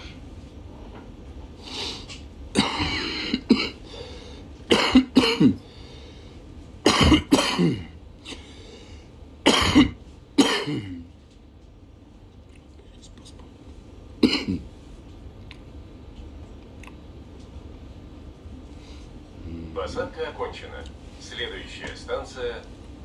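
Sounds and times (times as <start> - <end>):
man clearing throat: 2.5 - 3.8, 4.7 - 5.6, 6.8 - 8.4, 9.4 - 11.1, 14.2 - 14.7
man coughing: 2.5 - 3.9, 4.7 - 5.6, 6.8 - 8.5, 9.4 - 11.1, 14.2 - 14.7.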